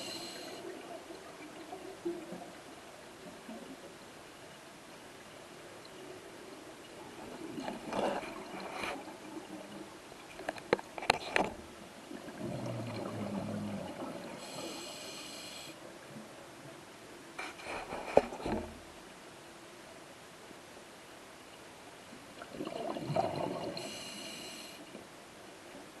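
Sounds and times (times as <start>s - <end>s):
scuba regulator breathing: 0.0s - 0.6s, 14.4s - 15.8s, 23.8s - 24.9s
exhaled bubbles burbling: 12.1s - 14.4s, 22.4s - 23.9s.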